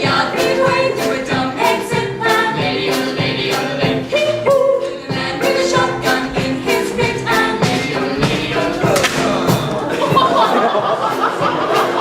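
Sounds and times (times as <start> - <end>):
group of voices singing: 0.0 - 12.0
band accompaniment with steady beat: 0.1 - 12.0.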